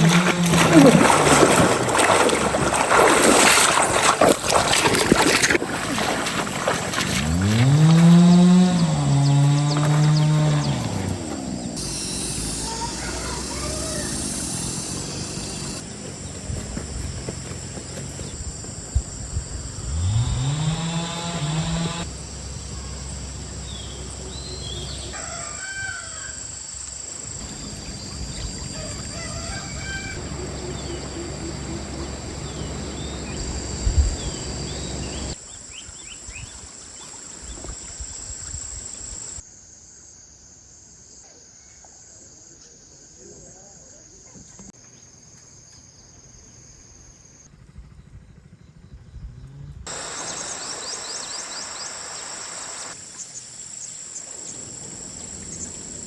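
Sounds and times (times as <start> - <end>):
outdoor background hum: 0.0 - 39.4, 44.2 - 56.0
small birds chirping: 8.4 - 20.2, 21.9 - 25.2, 26.6 - 37.8, 49.9 - 56.0
rooster crowing: 25.1 - 26.4, 28.7 - 31.0.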